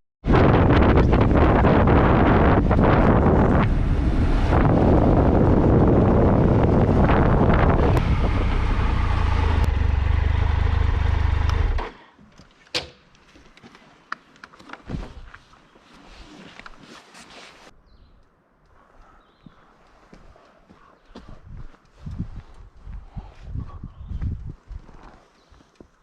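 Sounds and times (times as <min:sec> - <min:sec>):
wind noise on microphone: 0:00.2 - 0:09.7, 0:21.2 - 0:25.2
motorcycle engine: 0:01.2 - 0:12.0.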